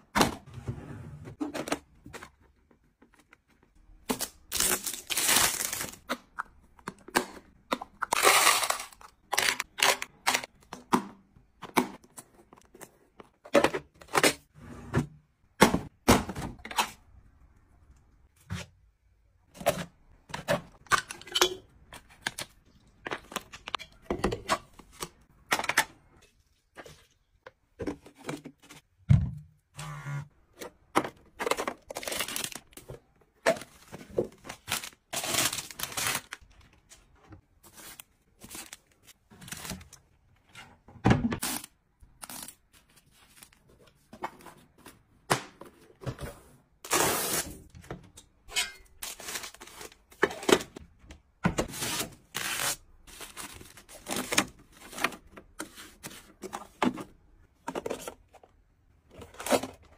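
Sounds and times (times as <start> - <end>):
packaging rustling and tearing: 31.5 - 32.8, 33.5 - 36.5.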